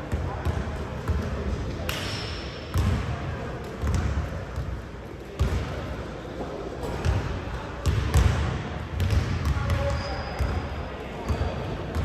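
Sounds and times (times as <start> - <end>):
murmur of crowd in hall: 0.0 - 12.0
basketball bouncing on gym floor: 2.7 - 3.2, 3.8 - 4.8, 7.0 - 10.6
sneaker squeak: 9.5 - 12.0.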